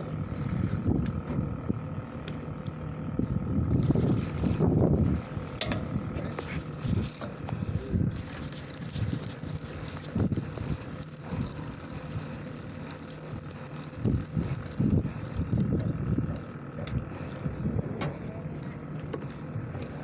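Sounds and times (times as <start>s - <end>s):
boat engine hum: 0.0s - 20.0s
wind buffeting microphone: 3.1s - 18.5s.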